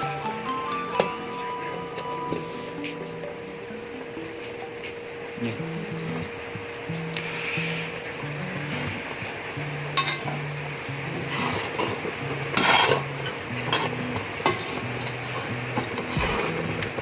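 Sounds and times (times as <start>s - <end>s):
low background music: 0.0s - 17.0s
food frying in oil: 7.2s - 17.0s
utensil scraping a pan: 11.2s - 16.6s.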